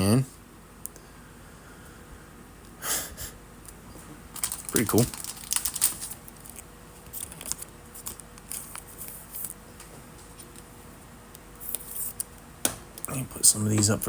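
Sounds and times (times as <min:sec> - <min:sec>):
plastic packaging crinkling: 0:04.3 - 0:09.6.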